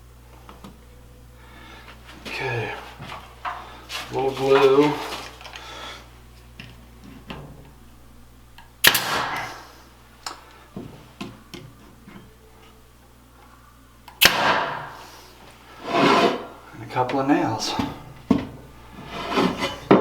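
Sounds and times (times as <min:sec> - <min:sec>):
nail gun firing with hiss: 0:08.8 - 0:09.8, 0:14.2 - 0:15.1.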